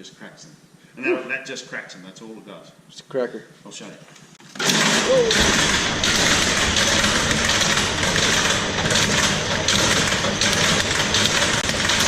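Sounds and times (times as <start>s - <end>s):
nut cracking machine clattering: 4.5s - 12.0s.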